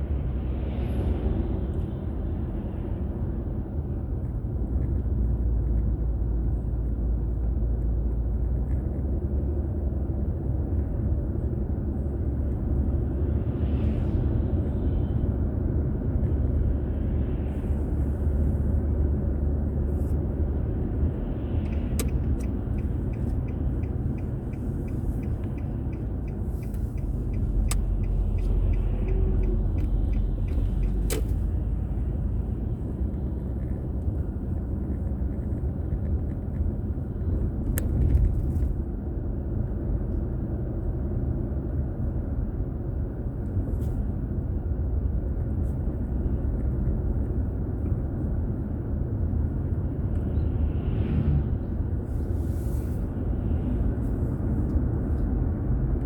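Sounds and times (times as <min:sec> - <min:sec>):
road and engine rumble: 0:00.0 - 0:56.0
faint regular ticking: 0:21.7 - 0:31.3
sharp clicks: 0:21.7 - 0:31.4.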